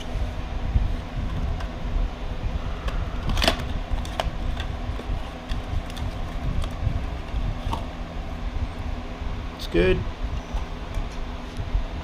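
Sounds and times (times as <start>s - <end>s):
low rumble: 0.0s - 9.4s.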